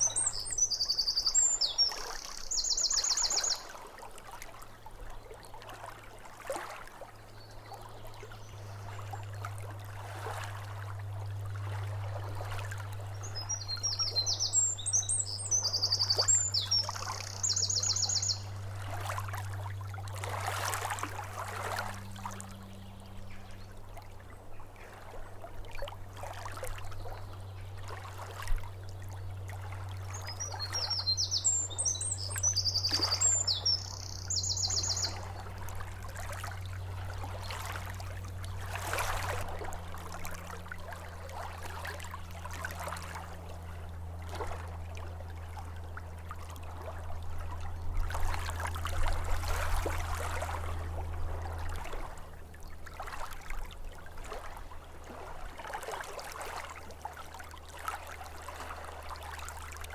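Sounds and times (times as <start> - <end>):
songbird singing: 0.0 - 3.7, 12.4 - 24.9, 26.8 - 39.6
small waves lapping: 0.0 - 59.9
steady low hum: 7.1 - 59.9.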